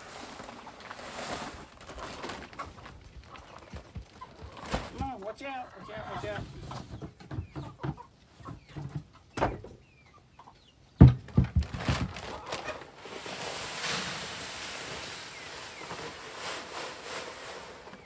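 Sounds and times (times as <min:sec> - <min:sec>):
chickens clucking: 0:00.2 - 0:18.0.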